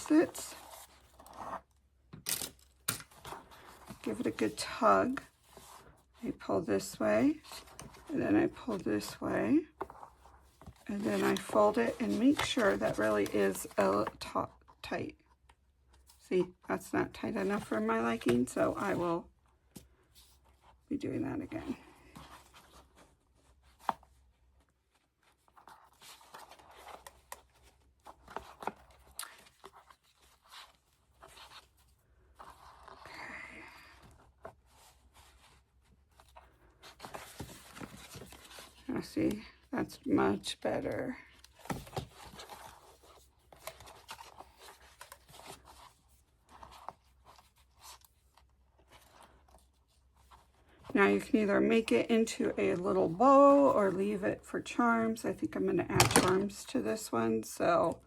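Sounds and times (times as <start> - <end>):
paper rustling: 6.8 - 14.3, 21.6 - 54.0.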